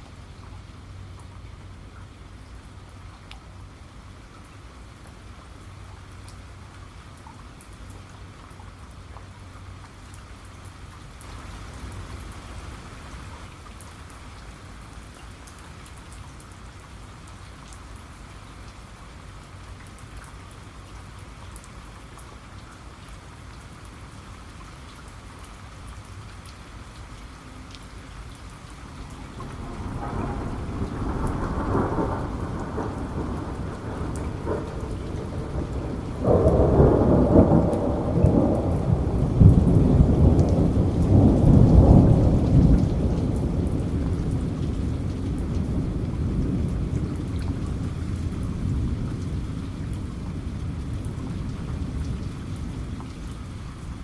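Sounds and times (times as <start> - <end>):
steady rain falling: 0.0 - 54.0
thunder rumbling: 29.0 - 54.0.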